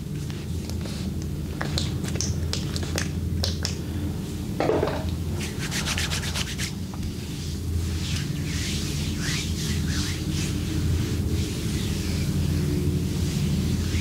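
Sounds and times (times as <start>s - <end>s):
steady low hum: 0.0s - 14.0s
hands rubbing on skin: 5.4s - 14.0s.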